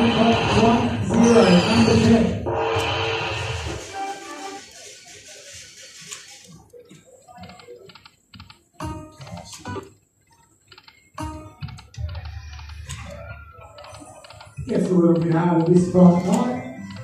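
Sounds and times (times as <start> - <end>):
sharp electronic clicks: 7.3 - 9.9, 10.6 - 17.0.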